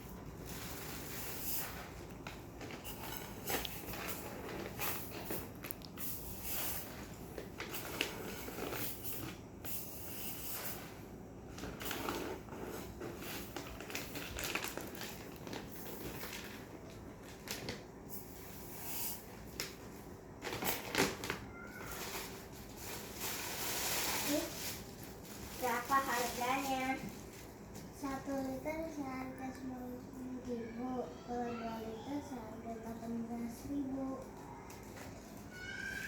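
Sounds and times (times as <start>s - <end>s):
rustling: 21.6s - 27.6s.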